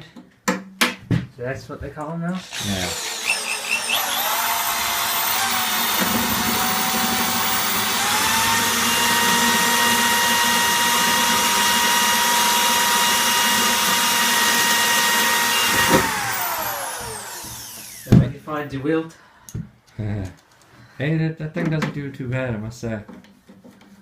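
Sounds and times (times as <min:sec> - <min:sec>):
electric drill whining: 0:02.4 - 0:18.2.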